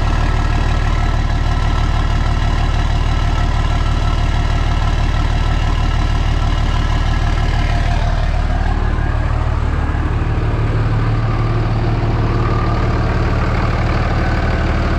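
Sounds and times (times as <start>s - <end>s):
diesel engine idling: 0.0s - 14.9s.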